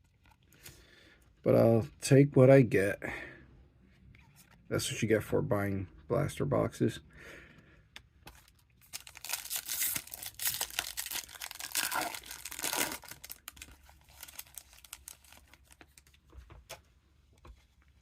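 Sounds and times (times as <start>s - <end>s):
plastic wrapper tearing and crinkling: 8.4s - 16.2s.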